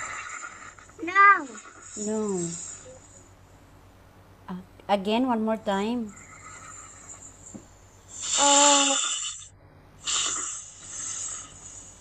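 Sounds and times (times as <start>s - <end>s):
snake hissing: 0.0s - 3.2s, 8.1s - 12.0s.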